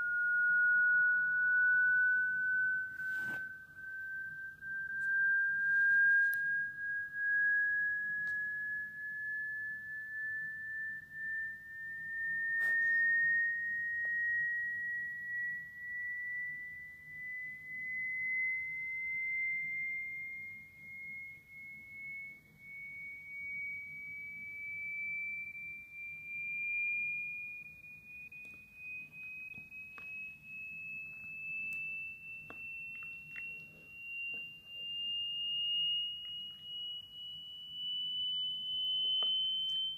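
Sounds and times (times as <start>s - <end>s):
rising sine test tone: 0.0s - 39.9s.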